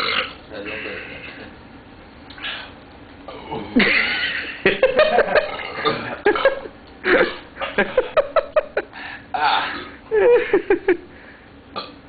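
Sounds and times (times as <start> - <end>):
man burping: 5.2 - 7.5, 11.8 - 12.0
man coughing: 7.1 - 7.5.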